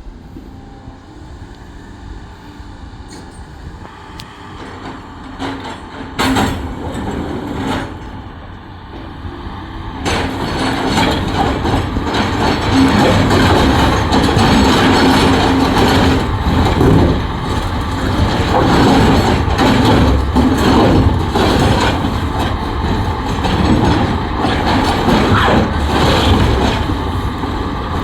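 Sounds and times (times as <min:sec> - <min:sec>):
diesel engine running loudly: 0:00.0 - 0:28.0
mechanical rattling: 0:10.1 - 0:28.0.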